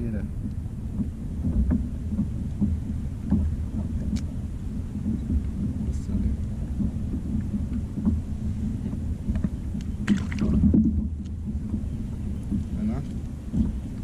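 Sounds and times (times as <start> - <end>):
water around a kayak: 0.0 - 14.0
wind: 0.0 - 14.0
faint clicks: 0.4 - 4.3.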